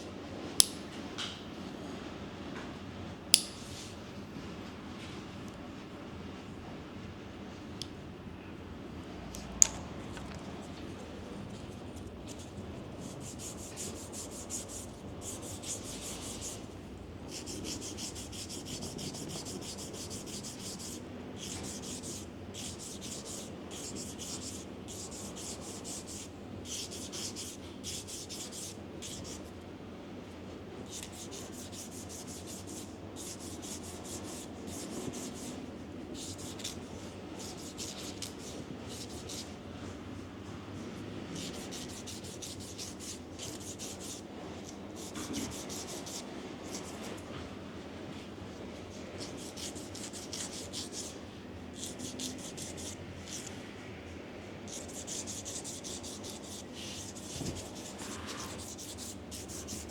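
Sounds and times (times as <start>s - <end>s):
nail file rasping: 12.0s - 16.7s, 17.3s - 29.5s, 30.9s - 35.6s, 36.2s - 36.8s, 37.4s - 39.5s, 41.4s - 47.2s, 49.2s - 51.2s, 51.8s - 53.5s, 54.7s - 59.9s.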